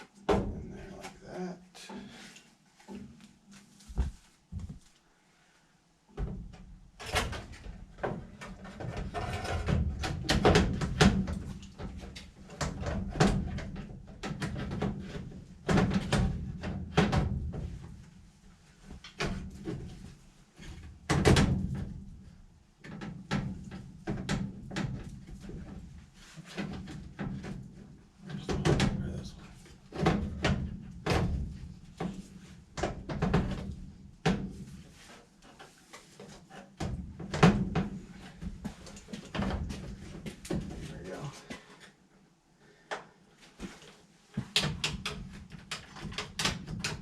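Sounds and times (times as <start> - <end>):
hard parts knocking and rattling: 44.4 - 47.0.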